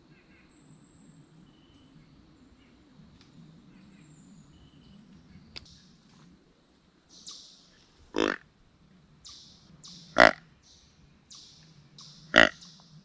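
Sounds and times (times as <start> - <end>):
faint bird chirps: 0.0 - 6.0.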